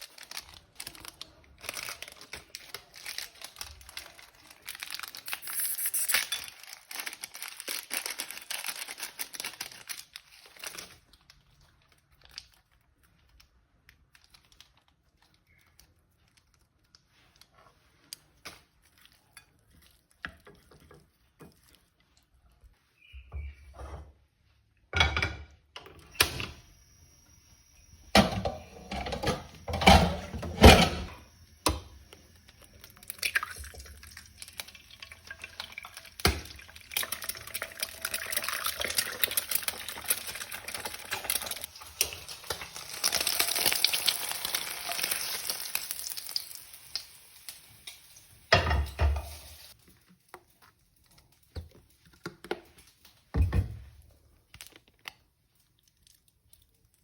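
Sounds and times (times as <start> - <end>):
noodles being stirred: 0.0 - 23.5, 28.1 - 46.7
utensils knocking against dish: 28.2 - 31.1.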